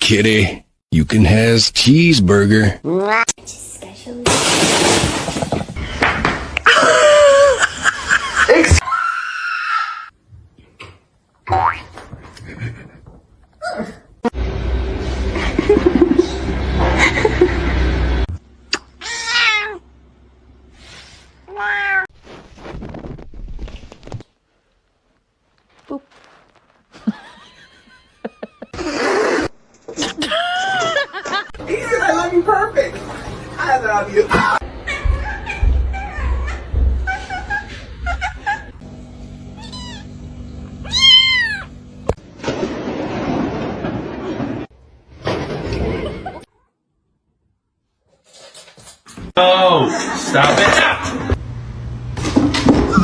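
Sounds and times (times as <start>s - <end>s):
cat meowing: 19.0s - 19.8s, 39.6s - 40.1s, 40.8s - 41.8s.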